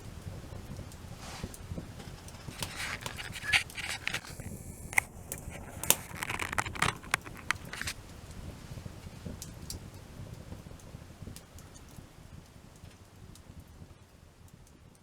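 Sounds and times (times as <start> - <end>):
wood fire crackling: 0.0 - 15.0
rustling or scraping: 1.2 - 8.0.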